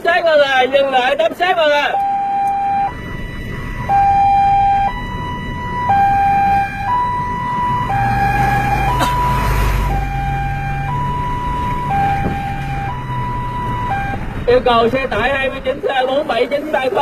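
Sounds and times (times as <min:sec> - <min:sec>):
two-tone police siren: 0:01.9 - 0:14.5.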